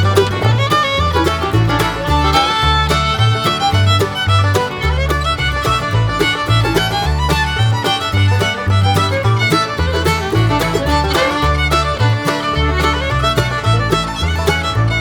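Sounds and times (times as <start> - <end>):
upbeat bluegrass music with fiddle: 0.0 - 15.0.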